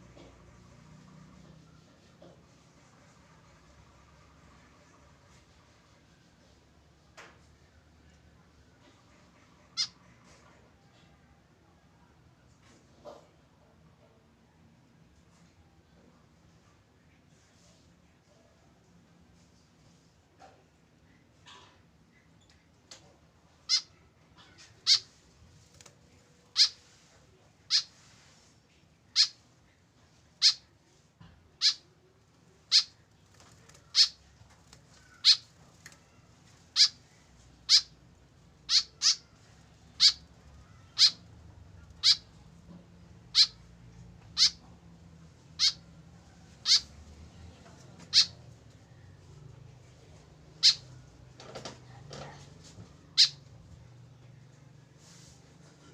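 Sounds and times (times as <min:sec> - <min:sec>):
bird giving short high calls: 0:38.7 - 0:39.2.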